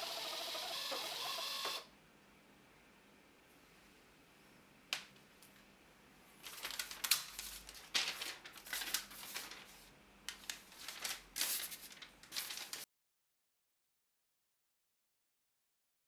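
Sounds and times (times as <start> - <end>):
paper receipt crinkling and tearing: 6.4 - 12.8.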